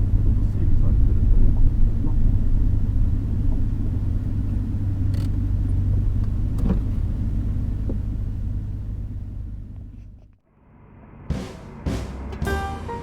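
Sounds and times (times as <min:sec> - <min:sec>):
car engine and road rumble: 0:00.0 - 0:13.0
faint clicks: 0:05.0 - 0:05.4.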